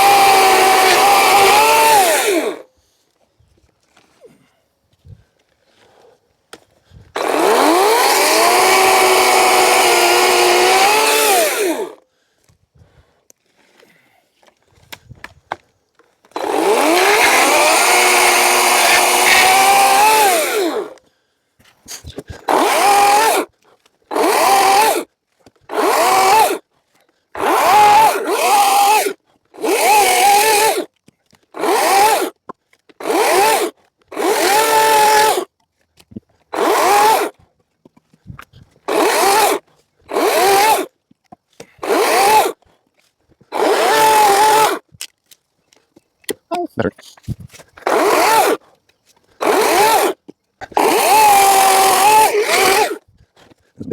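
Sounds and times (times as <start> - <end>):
chainsaw cutting branches: 0.0 - 2.7, 7.0 - 12.0, 16.2 - 21.0, 22.0 - 26.7, 27.3 - 38.0, 38.7 - 42.8, 43.4 - 45.2, 47.4 - 53.6.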